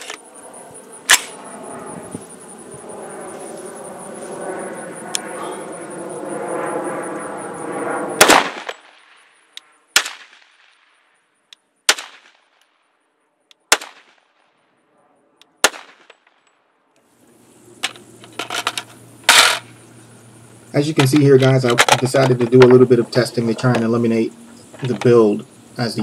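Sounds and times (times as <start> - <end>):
droning hum: 0.0 - 9.9, 17.1 - 26.0
gunshots: 1.1 - 1.4, 8.2 - 9.2, 10.0 - 10.8, 11.9 - 12.5, 13.7 - 14.4, 15.6 - 16.1.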